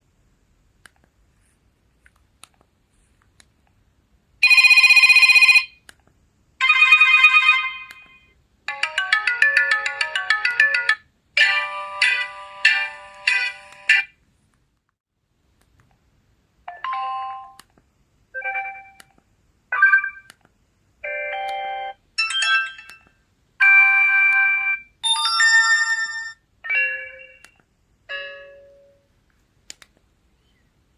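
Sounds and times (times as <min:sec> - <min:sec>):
phone electronic chimes: 0:04.4 - 0:05.7.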